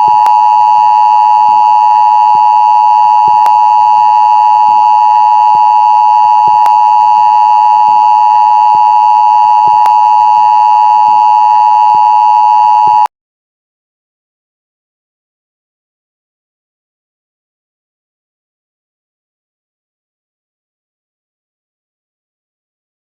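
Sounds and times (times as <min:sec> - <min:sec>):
two-tone alert signal: 0:00.0 - 0:13.1.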